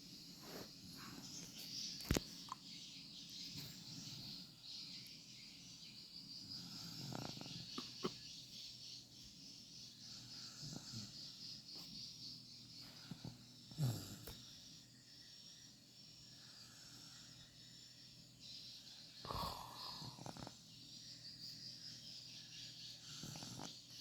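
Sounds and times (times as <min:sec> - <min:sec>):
insect chirring: 0:00.1 - 0:24.0
baby snoring: 0:06.6 - 0:08.2, 0:19.2 - 0:20.6.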